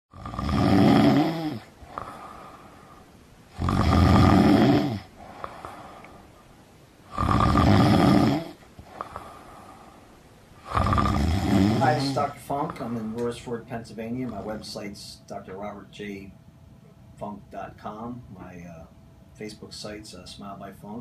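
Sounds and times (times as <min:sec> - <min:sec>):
person snoring loudly: 0:00.1 - 0:02.8, 0:03.5 - 0:06.1, 0:07.1 - 0:09.9, 0:10.6 - 0:12.9.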